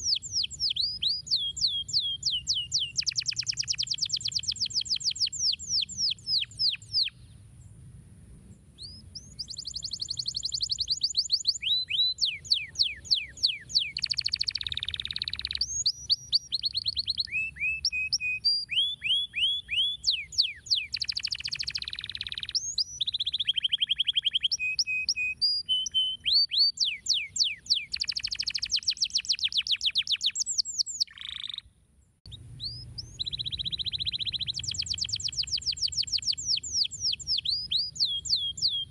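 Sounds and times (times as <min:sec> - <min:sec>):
canary trilling song: 0:00.0 - 0:07.2, 0:08.8 - 0:31.7, 0:32.3 - 0:38.9
faint low hum: 0:31.9 - 0:35.7.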